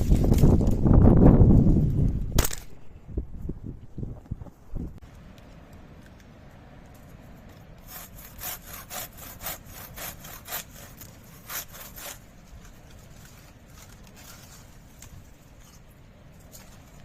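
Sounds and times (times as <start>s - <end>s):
hand saw cutting wood: 7.8s - 12.8s.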